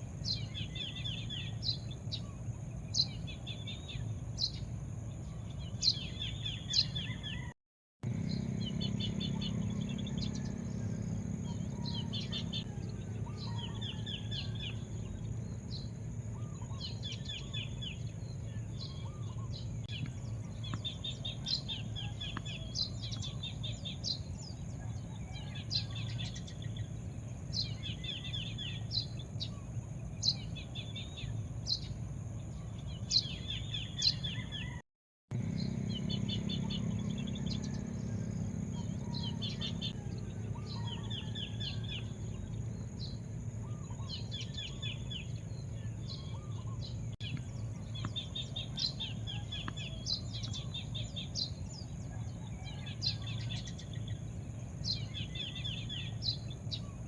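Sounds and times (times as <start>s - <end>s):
songbirds chirping: 0.0s - 57.0s
steady low rumble: 8.0s - 33.0s.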